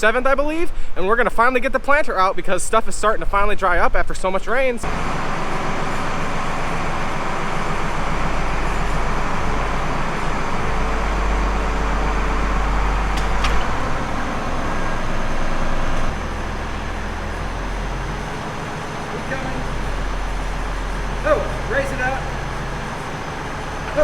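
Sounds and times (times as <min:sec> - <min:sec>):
tractor engine running: 0:04.8 - 0:24.0.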